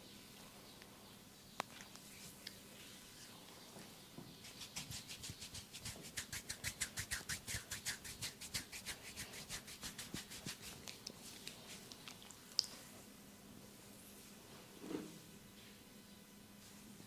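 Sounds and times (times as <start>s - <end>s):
hands rubbing hair and scalp: 4.4s - 12.1s.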